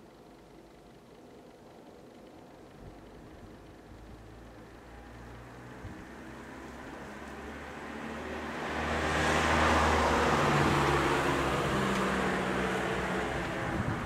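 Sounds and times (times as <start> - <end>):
low engine hum: 0.0 - 14.0
vehicle driving past: 4.9 - 14.0.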